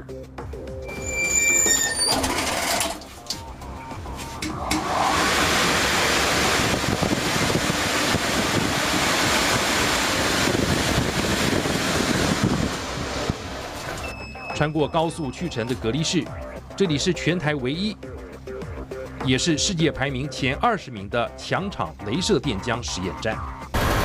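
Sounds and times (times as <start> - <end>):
soft background music: 2.5 - 5.0, 14.1 - 23.7
loud steady rushing air: 3.1 - 14.1.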